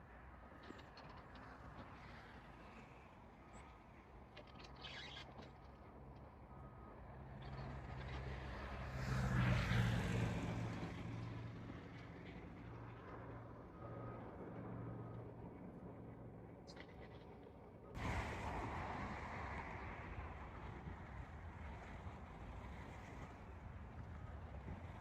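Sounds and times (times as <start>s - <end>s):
vehicle passing by: 7.4s - 15.1s.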